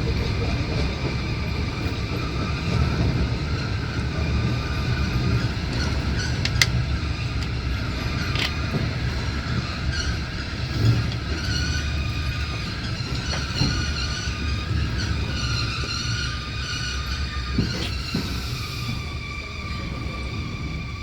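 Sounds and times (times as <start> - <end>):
train wheels rumbling on rails: 0.0 - 21.0
track clicks and knocks: 4.5 - 16.8.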